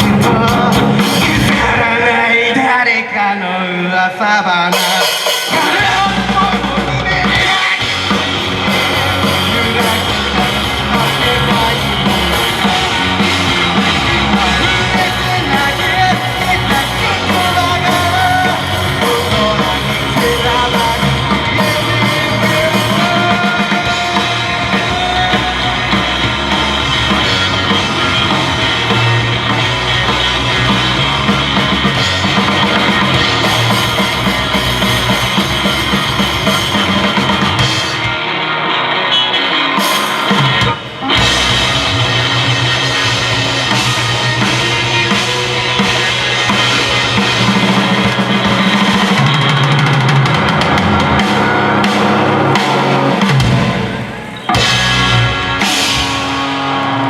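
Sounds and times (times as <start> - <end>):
rock band playing: 0.0 - 57.0.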